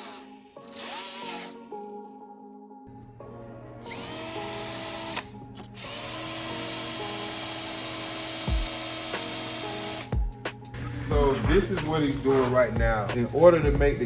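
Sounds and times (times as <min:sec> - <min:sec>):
handheld power tool running: 0:00.0 - 0:01.6, 0:03.8 - 0:10.2
background music with held tones: 0:00.0 - 0:14.0.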